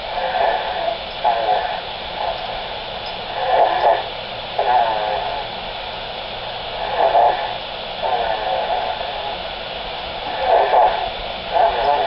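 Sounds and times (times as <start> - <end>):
baby snoring through speaker: 0.0 - 2.7, 3.3 - 5.5, 6.7 - 9.5, 10.2 - 12.0
baby monitor hiss: 0.0 - 12.0.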